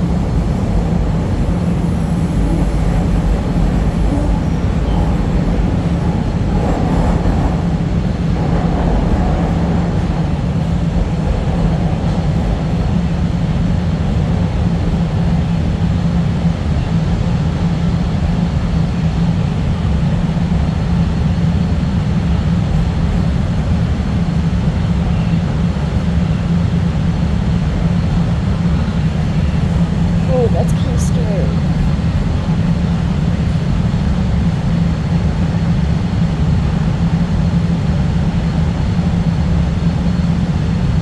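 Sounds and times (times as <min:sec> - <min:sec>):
constant low hum: 0:00.0 - 0:24.4
subway train rumbling: 0:00.0 - 0:41.0.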